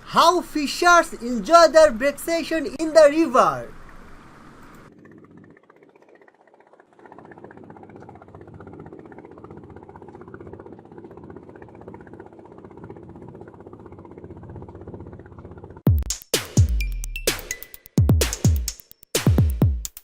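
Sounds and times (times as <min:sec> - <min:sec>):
boat engine running: 0:00.0 - 0:16.0.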